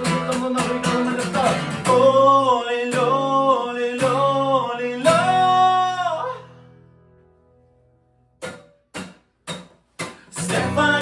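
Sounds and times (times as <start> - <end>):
person singing: 0.0 - 6.6, 10.3 - 11.0
guitar playing: 0.0 - 11.0.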